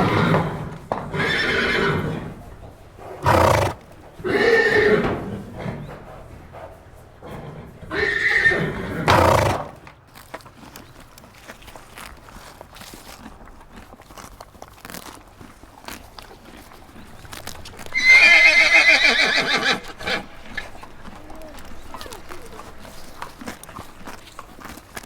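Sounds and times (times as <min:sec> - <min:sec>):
horse whinnying: 0:00.0 - 0:02.4, 0:03.2 - 0:06.0, 0:07.2 - 0:09.8, 0:17.7 - 0:23.7.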